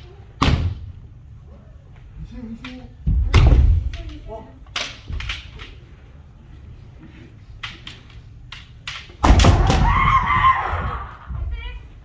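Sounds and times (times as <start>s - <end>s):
bamboo swords clacking: 7.6s - 9.8s
loud thud: 9.2s - 11.0s.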